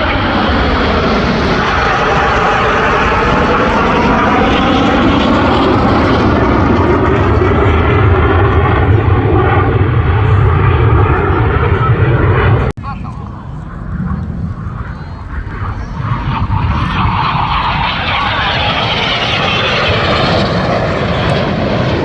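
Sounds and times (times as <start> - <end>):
jet aircraft flying past: 0.0 - 22.0.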